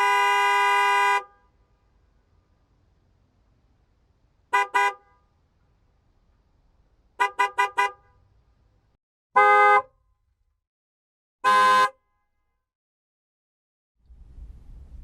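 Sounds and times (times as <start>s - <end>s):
car horn honking: 0.0s - 1.6s, 4.5s - 5.3s, 7.2s - 8.3s, 9.4s - 9.9s, 11.4s - 12.0s.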